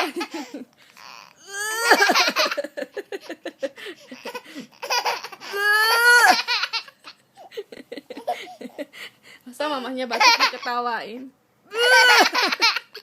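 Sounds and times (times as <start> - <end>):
small child laughing: 0.0 - 0.7, 1.8 - 9.0, 11.8 - 13.0.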